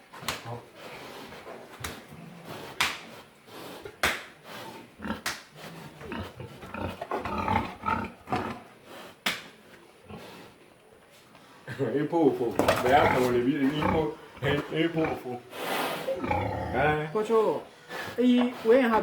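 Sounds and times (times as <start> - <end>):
pigs grunting and squealing: 3.8 - 8.8, 12.5 - 17.3.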